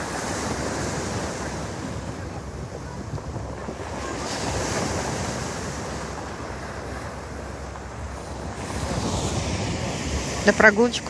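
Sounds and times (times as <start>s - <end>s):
surf breaking on beach: 0.0s - 11.0s.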